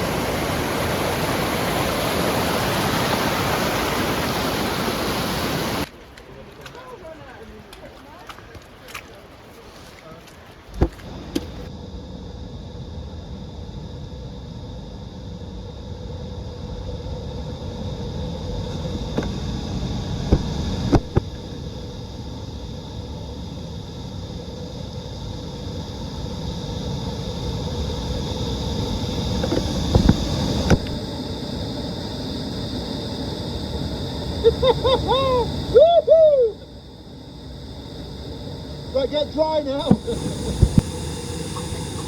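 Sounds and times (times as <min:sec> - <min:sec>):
waterfall rushing: 0:00.0 - 0:05.9, 0:39.8 - 0:42.0.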